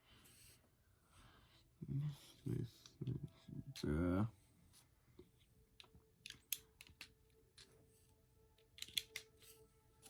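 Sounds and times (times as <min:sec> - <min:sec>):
plastic toy bricks clicking: 0:06.2 - 0:07.7, 0:08.8 - 0:09.3.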